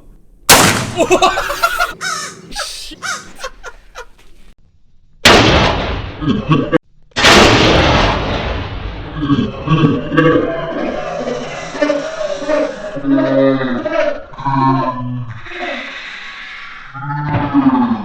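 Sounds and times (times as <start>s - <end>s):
shotgun blasts: 0.5s - 1.0s, 5.3s - 6.2s, 7.2s - 8.8s.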